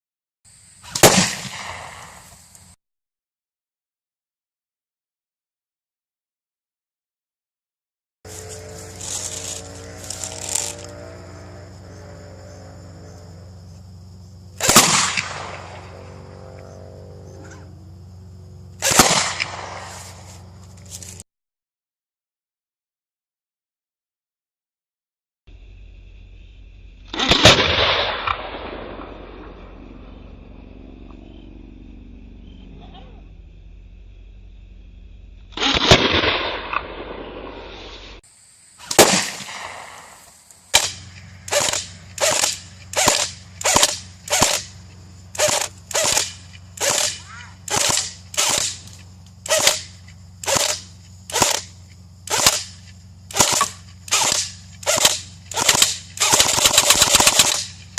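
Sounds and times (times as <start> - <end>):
sharp gunshot-like bangs: 0.9 - 2.3, 14.6 - 15.9, 18.8 - 20.0, 27.2 - 29.5, 35.6 - 37.6, 38.8 - 44.7.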